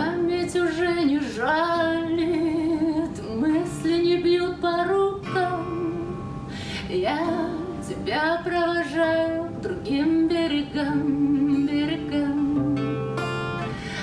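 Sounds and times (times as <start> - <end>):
acoustic guitar: 0.0 - 14.0.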